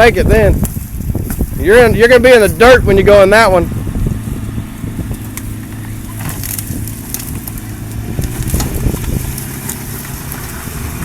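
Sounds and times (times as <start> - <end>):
engine running at low revs: 0.2 - 11.0
tyres crunching on rock: 5.0 - 11.0.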